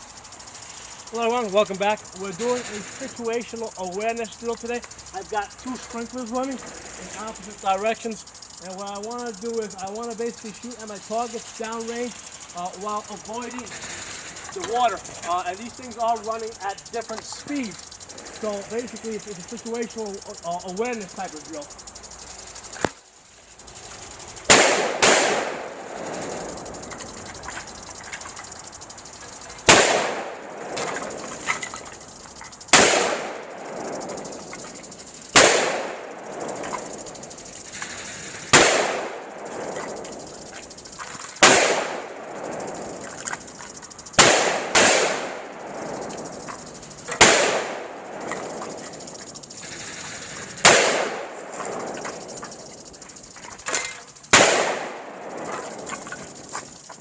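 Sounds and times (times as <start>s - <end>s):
gunshot echo: 24.5s - 25.6s, 35.4s - 36.0s
rifle firing single shots: 24.5s - 25.8s, 29.7s - 31.0s, 32.7s - 33.5s, 35.4s - 36.2s, 38.5s - 39.2s, 41.4s - 42.2s, 44.2s - 45.6s, 47.2s - 48.4s, 50.6s - 51.3s, 54.3s - 55.0s.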